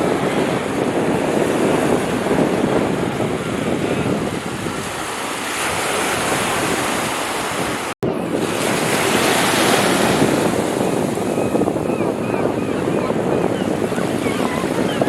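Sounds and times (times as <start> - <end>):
waves washing in: 0.0 - 11.8
wind buffeting microphone: 0.0 - 15.0.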